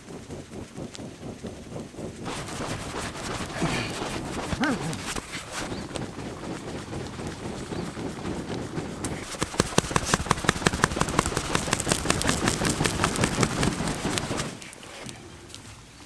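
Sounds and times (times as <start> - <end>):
fire rushing: 0.3 - 14.7
leaves crackling in fire: 2.2 - 6.0, 9.0 - 14.8.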